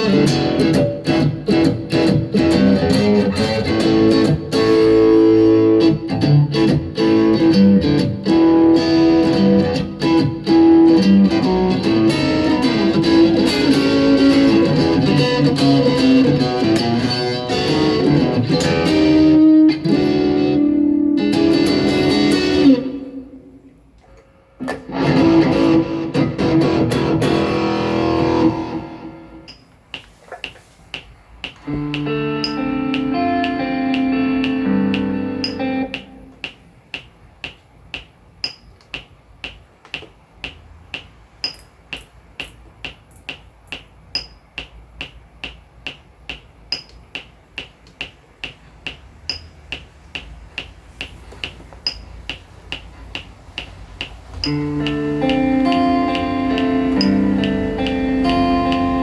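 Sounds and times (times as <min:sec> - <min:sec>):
electric guitar playing: 0:00.0 - 0:23.8, 0:24.6 - 0:29.5, 0:31.6 - 0:36.4, 0:53.0 - 0:59.0.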